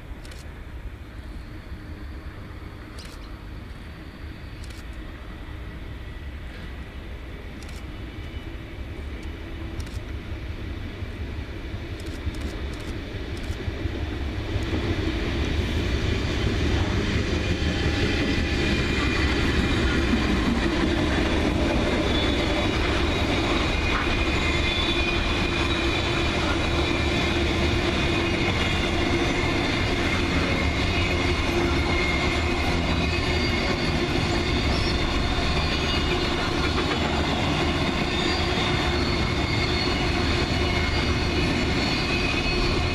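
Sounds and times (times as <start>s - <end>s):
freight train rumbling on rails: 0.0s - 42.9s.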